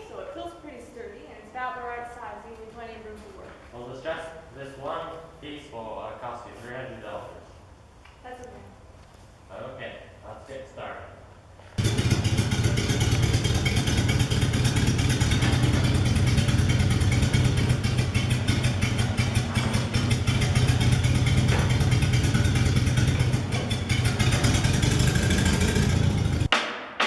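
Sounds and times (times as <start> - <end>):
welding arc crackling buzz: 11.8 - 26.5.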